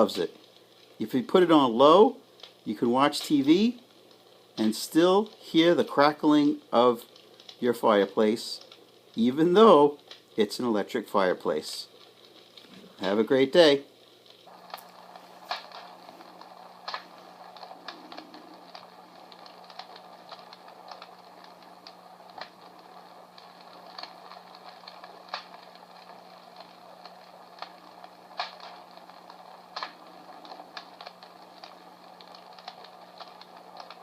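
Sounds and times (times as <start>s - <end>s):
fire crackling from small speaker: 0.0s - 34.0s
soft hiss: 0.0s - 34.0s
steady low hum: 0.0s - 34.0s
snaps and pops: 2.3s - 2.6s, 10.0s - 10.3s, 11.9s - 13.1s, 14.1s - 34.0s.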